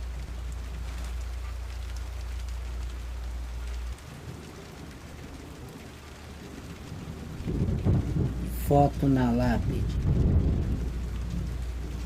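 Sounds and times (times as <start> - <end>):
steady rain falling: 0.0 - 12.0
deep low rumble: 9.6 - 12.0.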